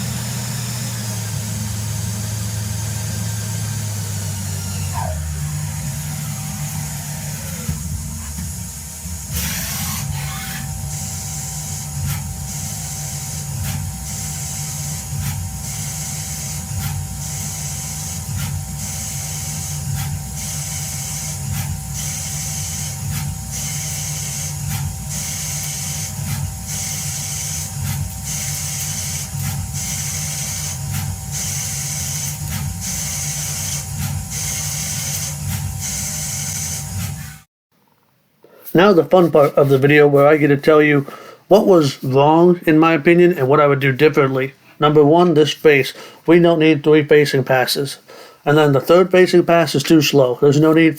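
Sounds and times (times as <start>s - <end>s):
lathe machine hum: 0.0s - 37.5s.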